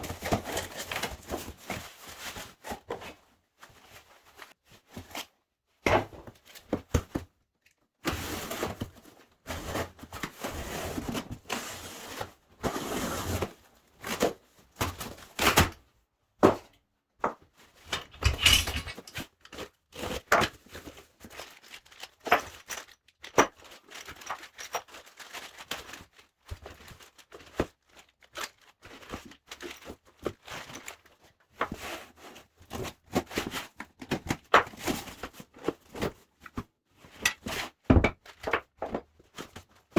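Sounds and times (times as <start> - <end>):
parts knocking and clicking: 17.9 - 19.2
rustling: 17.9 - 19.2.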